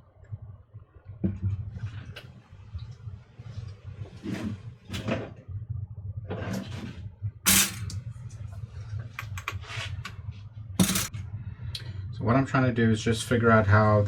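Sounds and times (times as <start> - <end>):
steady low hum: 0.0 - 14.0
toaster mechanism clicking and rattling: 10.8 - 11.1.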